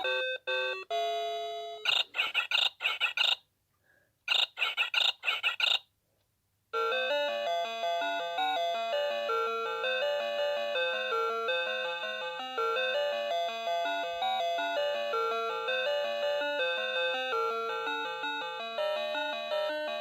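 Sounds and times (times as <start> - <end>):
electronic alarm clock tones: 0.0 - 3.4.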